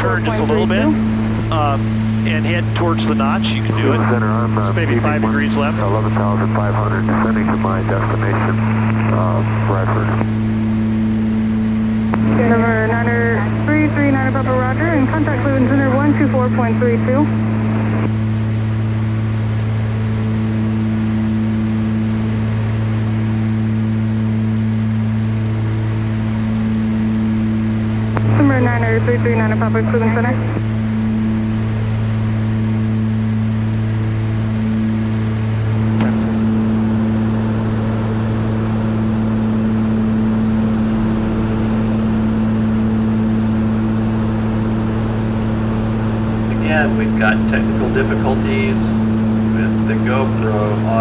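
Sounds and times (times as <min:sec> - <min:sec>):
aircraft engines droning in cabin: 0:00.0 - 0:51.0
thin high whine: 0:18.0 - 0:28.4, 0:45.8 - 0:51.0.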